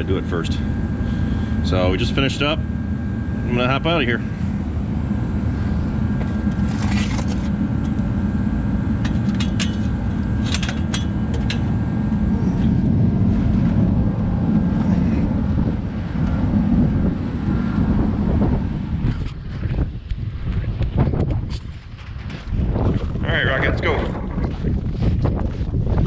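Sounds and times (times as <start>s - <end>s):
vehicle engine rumbling: 0.0s - 26.0s.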